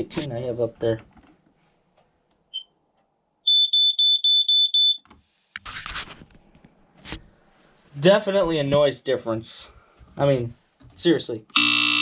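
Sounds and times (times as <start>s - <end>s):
smoke alarm chirp: 3.4s - 5.0s, 11.6s - 12.0s
smoke alarm horn pulsing: 3.5s - 5.0s, 11.5s - 12.0s.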